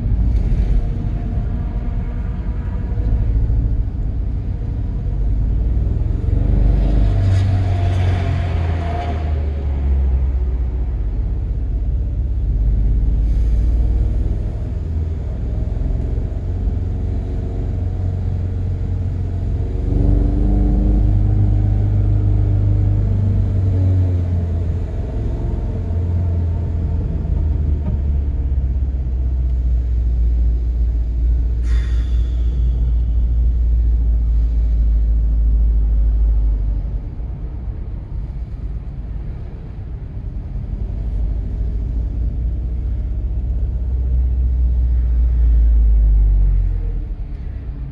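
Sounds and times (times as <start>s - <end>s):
car engine running under load: 0.0s - 47.9s
brief hiss: 31.6s - 32.8s.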